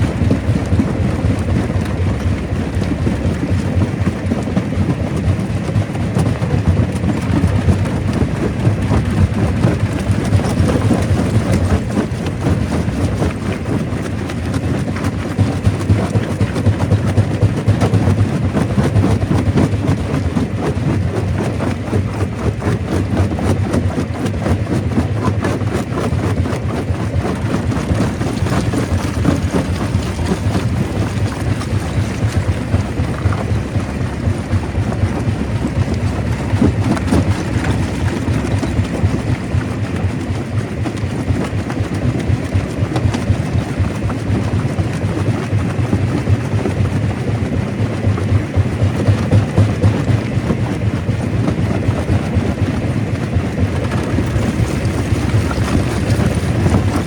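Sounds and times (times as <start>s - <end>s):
stone crusher rumbling: 25.7s - 39.7s.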